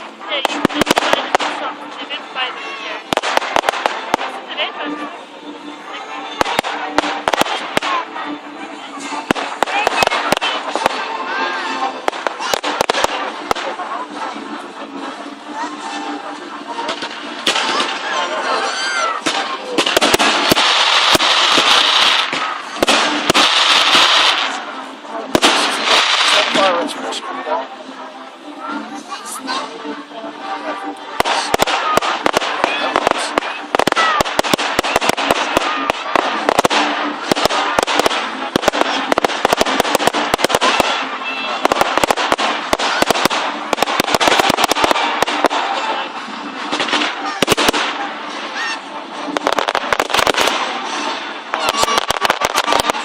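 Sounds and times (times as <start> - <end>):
fireworks bangs: 0.0 - 2.3, 3.0 - 5.0, 6.2 - 8.3, 9.0 - 11.1, 11.9 - 13.9, 16.8 - 18.1, 19.2 - 26.9, 31.1 - 48.6, 49.2 - 53.0
fireworks crackling hiss: 0.0 - 4.5, 6.3 - 13.9, 19.3 - 27.3, 31.1 - 48.6, 49.2 - 53.0
crowd voices: 0.0 - 53.0.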